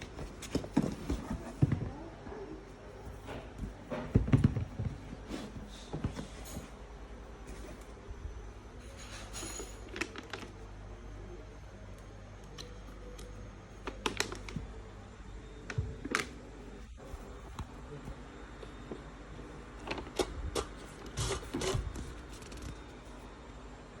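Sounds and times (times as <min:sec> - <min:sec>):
low steady hum: 0:00.0 - 0:24.0
packaging clicks and rustles: 0:09.5 - 0:10.6, 0:12.6 - 0:14.8, 0:15.6 - 0:17.7, 0:19.8 - 0:22.9.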